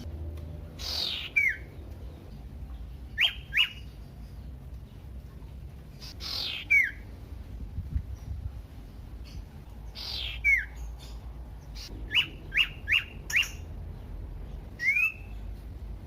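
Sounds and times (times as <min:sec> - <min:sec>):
bird calling harsh rasp: 0:00.8 - 0:01.6
bird whistles: 0:00.8 - 0:01.7, 0:03.2 - 0:03.9, 0:06.0 - 0:07.0, 0:10.0 - 0:10.8, 0:11.8 - 0:13.6, 0:14.8 - 0:15.4.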